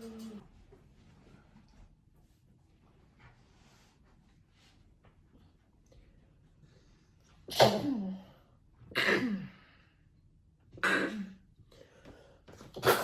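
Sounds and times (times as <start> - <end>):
person sneezing: 7.5 - 8.3, 12.8 - 13.0.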